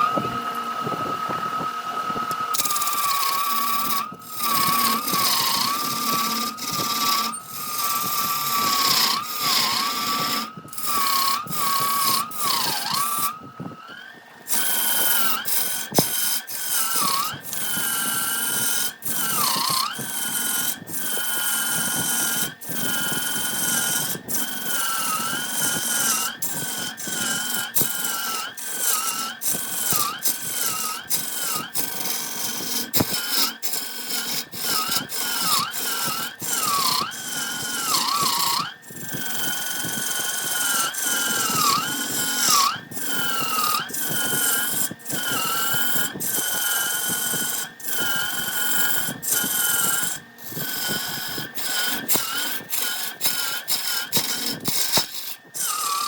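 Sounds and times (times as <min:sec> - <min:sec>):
turning tool cutting wood: 0:00.0 - 0:56.0
wood lathe motor whine: 0:00.0 - 0:56.0.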